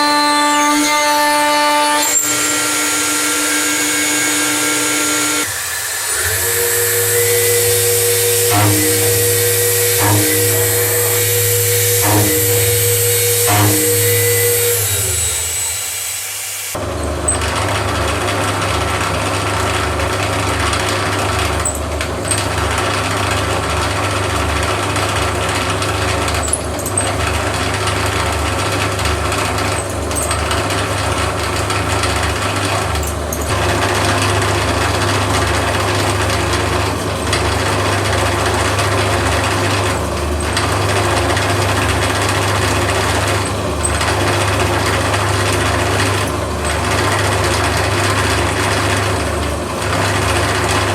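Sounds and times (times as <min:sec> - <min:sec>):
milling cutter cutting metal: 0:00.0 - 0:18.0
spindle motor hum: 0:00.0 - 0:50.9.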